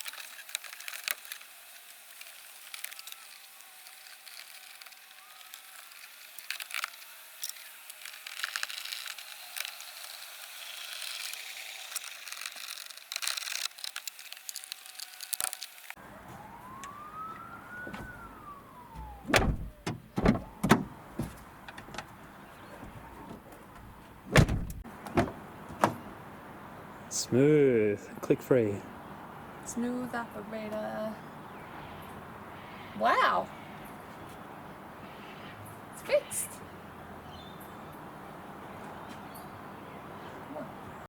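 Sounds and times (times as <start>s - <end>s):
power window motor whining: 17.7s - 22.1s
car door thumping shut: 19.0s - 22.1s, 22.8s - 26.0s
car door clicks and rattles: 19.0s - 22.2s, 22.8s - 26.1s.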